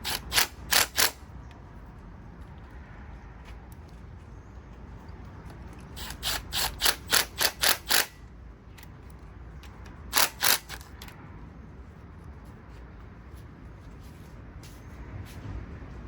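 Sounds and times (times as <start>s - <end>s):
ratchet wrench rasping: 0.0s - 1.2s, 5.9s - 11.2s.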